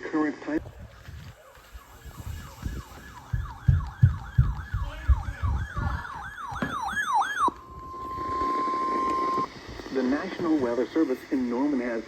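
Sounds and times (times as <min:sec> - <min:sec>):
electronic siren sweeping: 0:00.8 - 0:09.9
heavy low thumps: 0:02.6 - 0:06.4.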